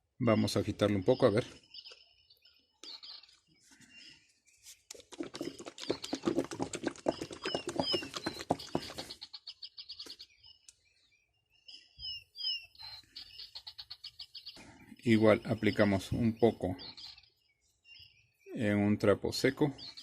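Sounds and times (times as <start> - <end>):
birds chirping: 0.2 - 20.0
liquid container being shaken: 4.7 - 9.2
bird trill: 5.4 - 20.0.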